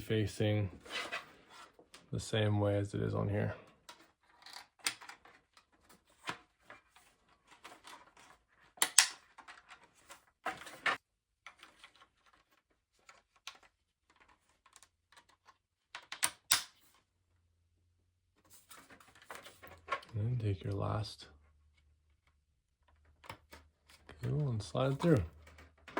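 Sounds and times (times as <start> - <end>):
small parts clicking and tapping: 8.8 - 9.6, 13.4 - 16.8.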